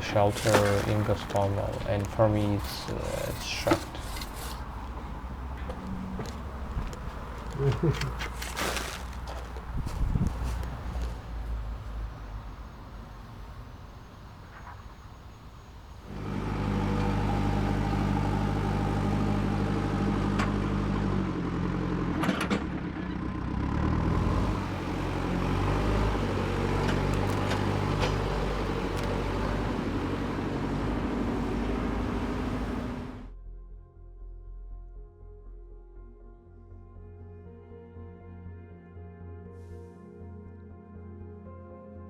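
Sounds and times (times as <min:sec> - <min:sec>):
large vehicle engine running: 0:00.0 - 0:12.6, 0:16.1 - 0:33.4.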